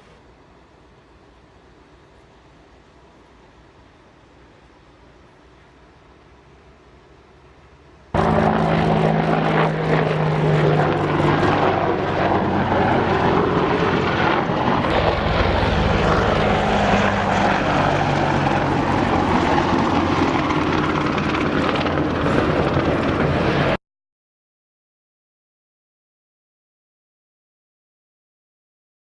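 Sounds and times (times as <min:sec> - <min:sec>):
low hum: 0:00.0 - 0:23.8
loud engine running: 0:08.2 - 0:23.5.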